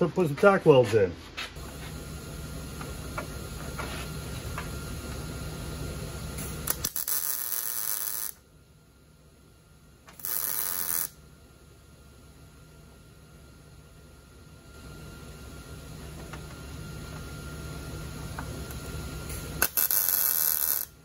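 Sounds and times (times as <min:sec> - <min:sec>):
low steady hum: 0:00.0 - 0:21.0
welding hissing crackle: 0:06.0 - 0:08.4, 0:10.1 - 0:11.2, 0:18.6 - 0:21.0.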